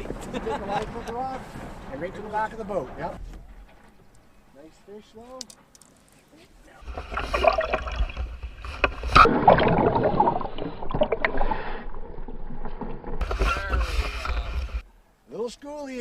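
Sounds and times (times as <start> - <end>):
water splashing and sloshing: 6.8 - 14.8.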